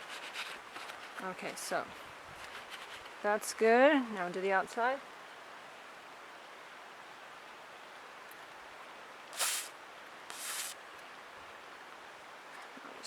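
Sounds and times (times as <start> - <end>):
faint room hiss: 0.0 - 13.0
aerosol can spraying: 9.4 - 9.7, 10.3 - 10.8.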